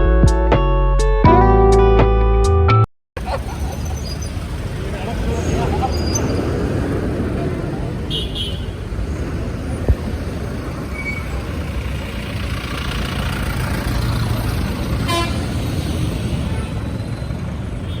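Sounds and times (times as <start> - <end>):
engine and tyre rumble: 3.2 - 18.0
short vehicle horn toot: 15.1 - 15.5.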